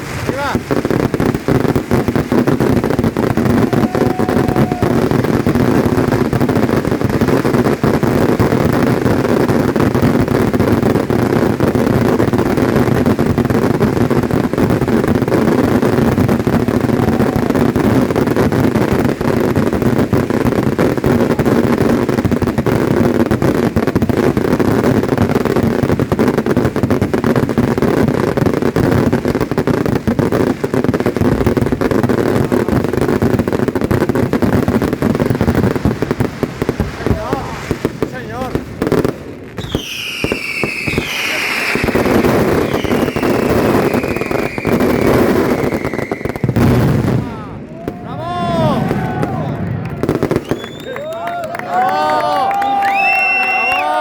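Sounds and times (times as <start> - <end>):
fireworks barrage: 0.0 - 54.0
firework whistle: 3.4 - 5.3, 16.6 - 18.0, 39.6 - 46.6, 48.6 - 54.0.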